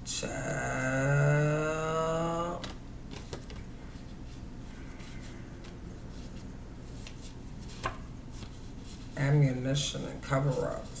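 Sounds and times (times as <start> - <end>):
low steady hum: 0.0 - 11.0
cards tapping and rustling: 2.6 - 3.7, 7.0 - 8.6.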